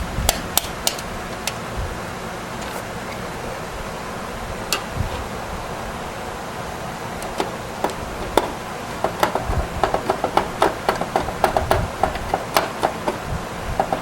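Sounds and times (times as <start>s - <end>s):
steady hiss: 0.0s - 14.0s
clicks and taps of computer parts: 7.2s - 13.2s.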